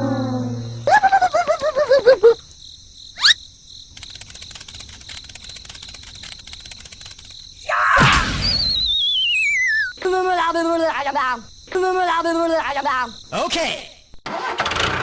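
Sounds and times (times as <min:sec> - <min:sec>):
cricket chirping: 0:00.0 - 0:14.2
rising whistle: 0:08.4 - 0:10.0.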